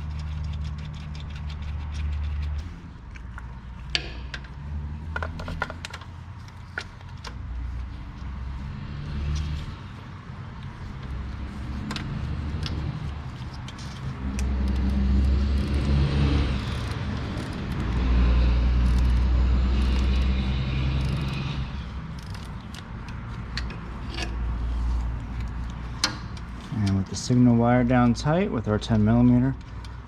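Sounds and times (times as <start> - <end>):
hand wrench clicking: 13.5 - 18.0, 18.8 - 21.5, 22.1 - 24.4.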